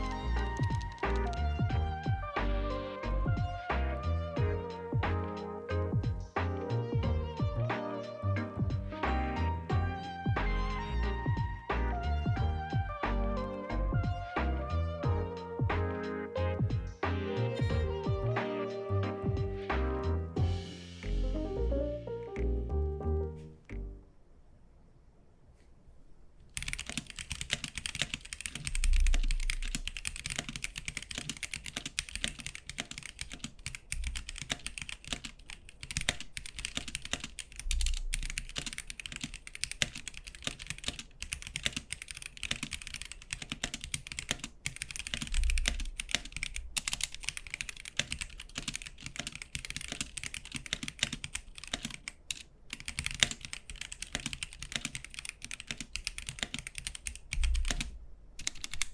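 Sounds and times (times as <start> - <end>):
fast mechanical keyboard typing: 0.0 - 1.7, 26.5 - 58.9.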